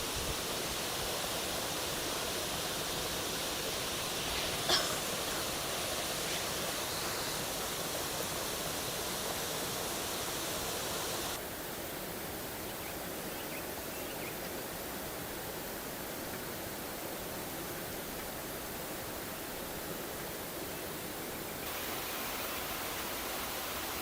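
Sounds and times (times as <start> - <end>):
waterfall rushing: 0.0 - 11.4, 21.7 - 24.0.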